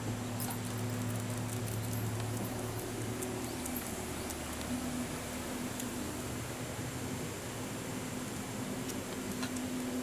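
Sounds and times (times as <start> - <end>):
background hiss with low hum: 0.0 - 10.0.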